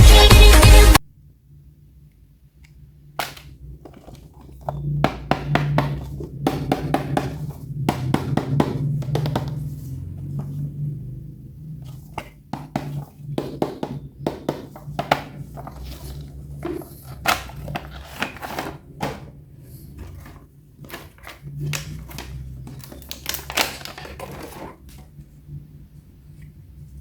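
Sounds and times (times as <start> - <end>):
hard plastic pieces clattering: 3.2 - 9.6, 11.9 - 25.1.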